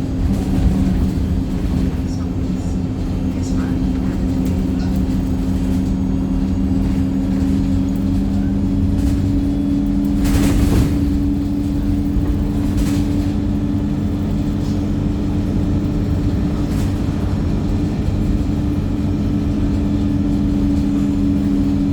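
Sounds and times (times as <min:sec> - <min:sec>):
bus engine rumble: 0:00.0 - 0:21.9.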